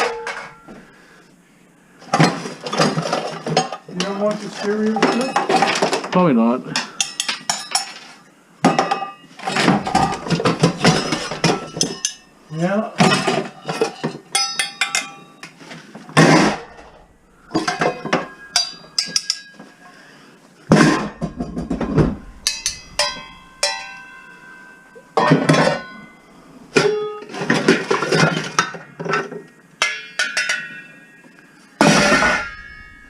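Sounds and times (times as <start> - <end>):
metal pots and pans clanking: 0.0 - 0.8, 4.9 - 6.1, 6.8 - 12.3, 13.0 - 15.6, 16.2 - 19.8, 20.7 - 31.2, 31.8 - 33.0
rummaging and scraping: 2.2 - 6.1, 9.4 - 12.3.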